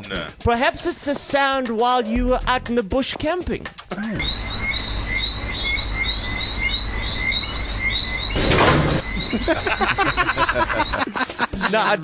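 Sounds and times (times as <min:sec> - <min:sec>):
repeated chirp: 0:04.1 - 0:11.2
thin steady insect trill: 0:04.2 - 0:11.2.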